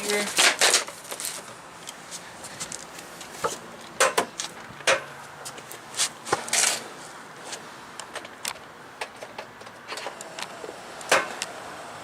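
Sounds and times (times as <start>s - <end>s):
scraping rustle: 0.0s - 3.7s, 5.4s - 7.7s.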